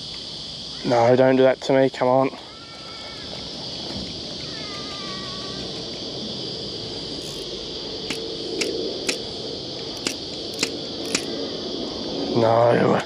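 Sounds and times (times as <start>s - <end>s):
insects buzzing: 0.0s - 13.0s
sharp clicks: 8.1s - 9.3s, 10.0s - 11.3s.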